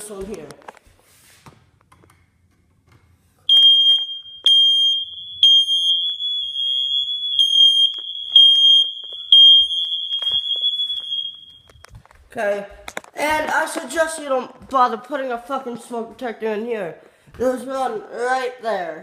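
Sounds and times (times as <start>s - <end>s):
smoke detector alarm: 3.5s - 12.1s.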